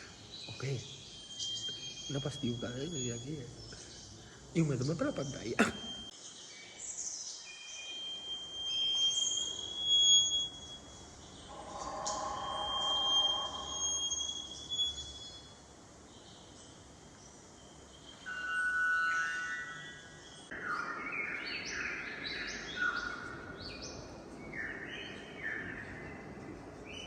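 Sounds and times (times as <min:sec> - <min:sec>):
lower whistling tone: 0:00.0 - 0:03.9, 0:07.5 - 0:15.7
recorded birdsong over loudspeakers: 0:00.0 - 0:27.0.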